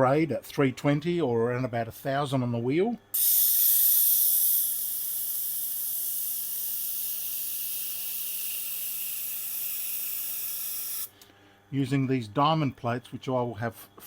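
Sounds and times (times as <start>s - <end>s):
faint motor hum: 0.0s - 14.0s
grinding plate hissing on grindstone: 3.2s - 11.1s.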